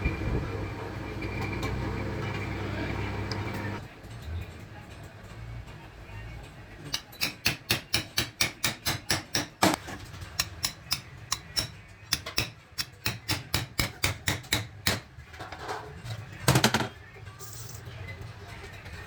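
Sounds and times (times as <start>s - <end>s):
hammer tapping metal: 6.9s - 9.8s, 10.4s - 15.1s.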